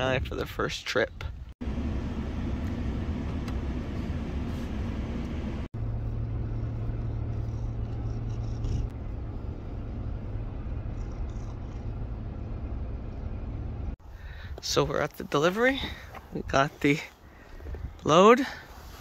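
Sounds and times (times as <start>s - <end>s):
vehicle engine and road rumble: 0.0s - 19.0s
low steady hum: 1.6s - 14.5s.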